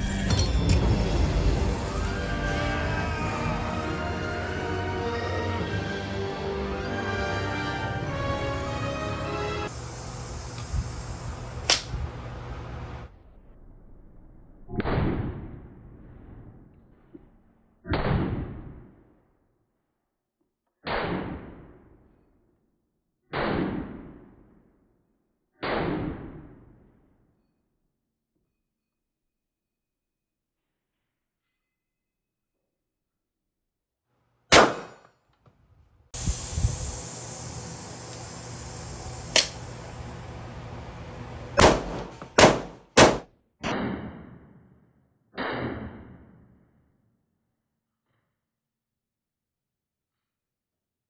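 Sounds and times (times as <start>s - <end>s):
sharp click: 11.6s - 11.9s, 39.3s - 39.7s
pistol shots: 34.5s - 35.0s, 41.6s - 43.2s.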